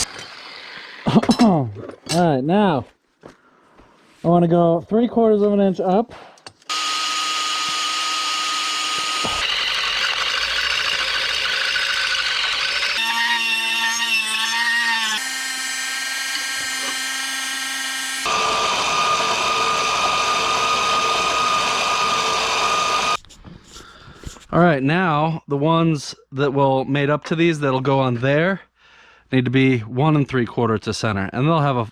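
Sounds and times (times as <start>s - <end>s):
power drill whining through metal: 0.0s - 1.1s, 6.7s - 23.2s.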